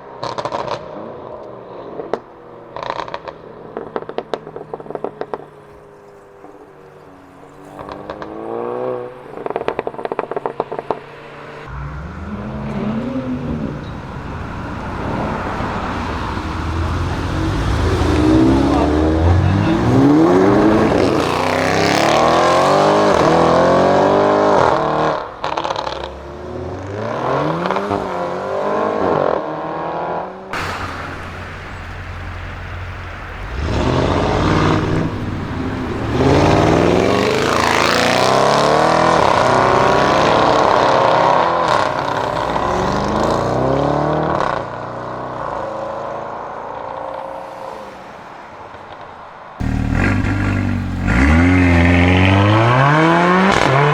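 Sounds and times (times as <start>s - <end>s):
car engine accelerating hard: 7.8s - 29.5s, 30.6s - 45.9s, 49.6s - 53.9s.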